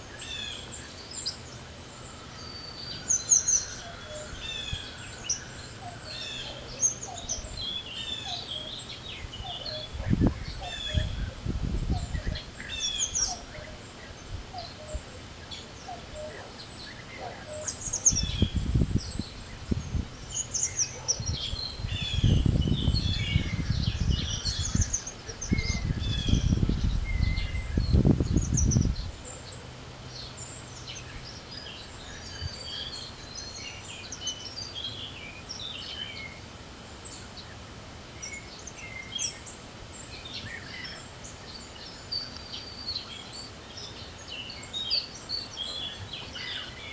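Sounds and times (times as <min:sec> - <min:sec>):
songbirds singing and chirping: 0:00.0 - 0:46.9
wind buffeting microphone: 0:09.2 - 0:13.3, 0:17.8 - 0:29.2.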